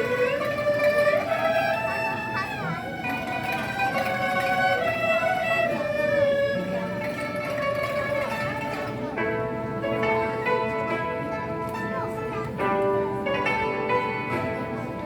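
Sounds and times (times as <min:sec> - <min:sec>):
traditional orchestra playing: 0:00.0 - 0:15.0.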